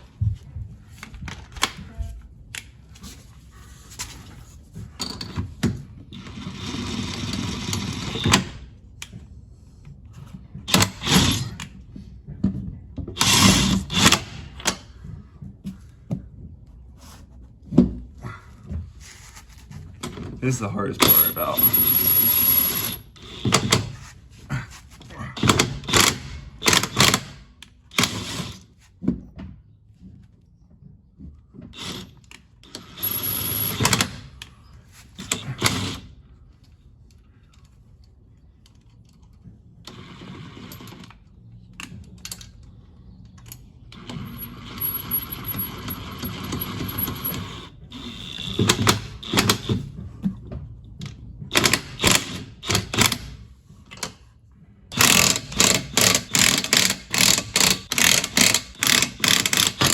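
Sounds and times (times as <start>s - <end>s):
impact wrench bursts: 21.0s - 24.0s, 51.5s - 53.4s, 54.9s - 59.9s.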